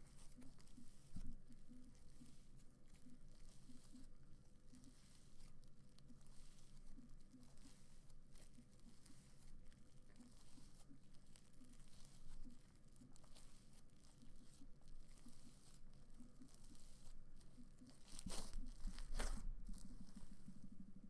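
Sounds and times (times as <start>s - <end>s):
slime crackling and tearing: 17.8s - 20.4s.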